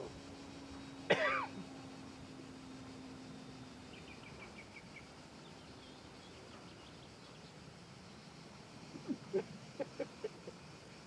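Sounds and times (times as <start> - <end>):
faint hiss: 0.0 - 11.0
steady low hum: 0.0 - 11.0
small bird chirping: 3.5 - 10.0.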